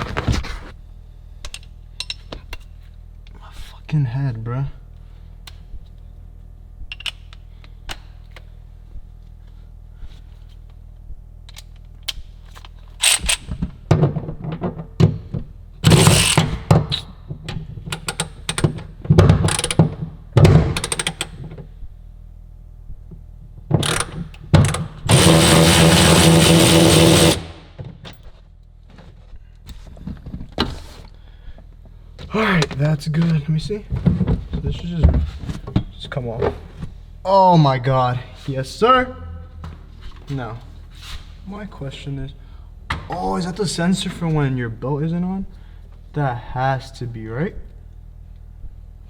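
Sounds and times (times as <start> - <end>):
power drill running: 15.8 - 16.6, 23.8 - 27.7.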